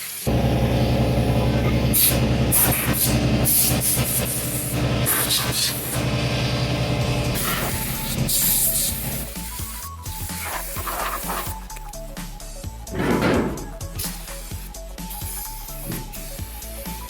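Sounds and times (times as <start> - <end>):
hissing spray bursts: 0.0 - 0.4, 1.9 - 11.6, 13.5 - 17.0
motor running steadily: 0.3 - 9.4, 12.7 - 13.8.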